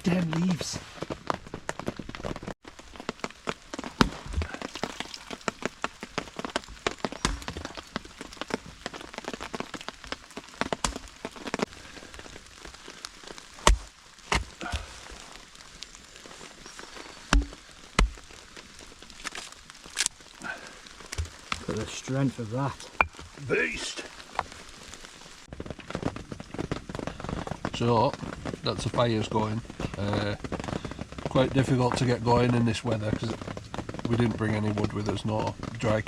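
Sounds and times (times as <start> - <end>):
heavy rain pattering: 0.0 - 36.0
loud thuds: 17.3 - 18.2.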